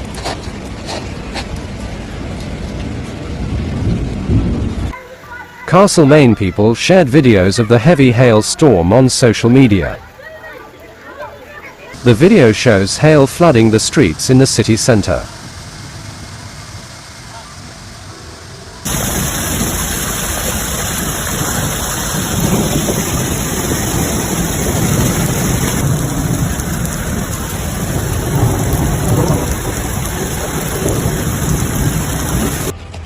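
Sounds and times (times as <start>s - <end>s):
heavy hail and rain: 18.8s - 32.7s.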